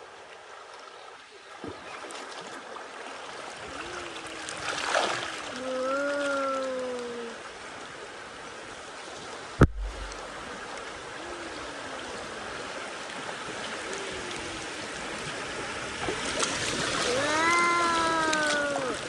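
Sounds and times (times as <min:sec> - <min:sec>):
river water rushing: 0:00.0 - 0:19.0
sharp knock: 0:09.6 - 0:10.2.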